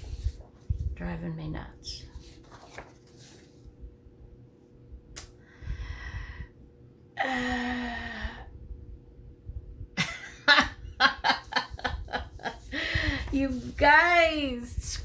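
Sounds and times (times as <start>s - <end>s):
woman sighing: 7.2s - 8.5s
woman breathing out: 7.2s - 8.6s.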